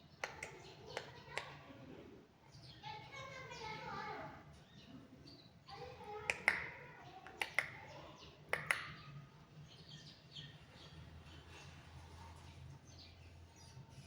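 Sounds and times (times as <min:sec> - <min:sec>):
sharp clicks: 0:00.2 - 0:01.5.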